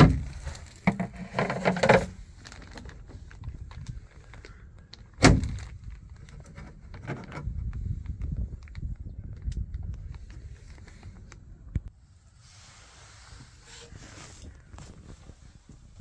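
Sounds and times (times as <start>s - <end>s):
rattling and handling noise: 0.0s - 8.8s.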